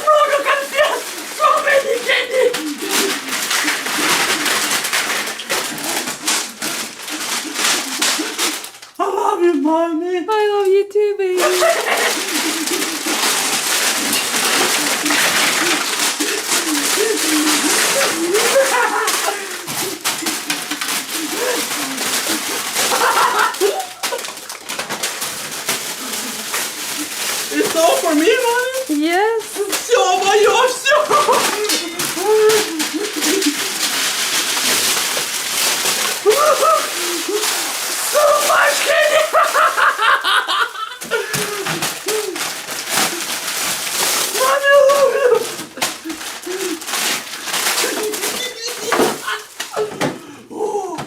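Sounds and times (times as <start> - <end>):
rustling and crinkling: 0.0 - 9.0, 11.3 - 50.4
faint voice: 47.8 - 51.0.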